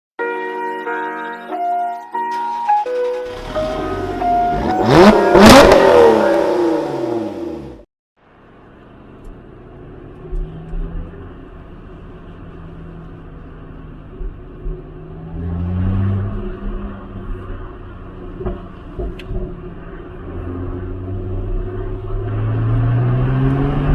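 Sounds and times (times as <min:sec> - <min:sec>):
background music: 0:00.2 - 0:06.6
engine running at low revs: 0:03.3 - 0:07.9
sports car passing at speed: 0:03.4 - 0:07.8, 0:15.0 - 0:18.4, 0:19.7 - 0:23.9.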